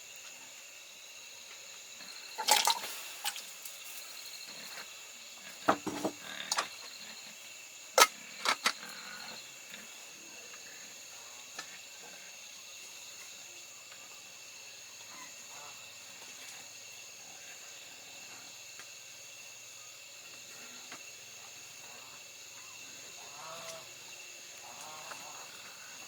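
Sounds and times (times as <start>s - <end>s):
insects chirring: 0.0s - 26.0s
pots and utensils clattering: 2.4s - 3.4s, 5.7s - 6.7s.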